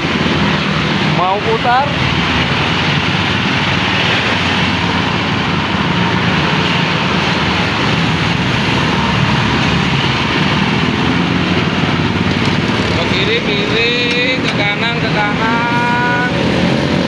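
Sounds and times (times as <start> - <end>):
hand tractor engine running: 7.1 - 15.2.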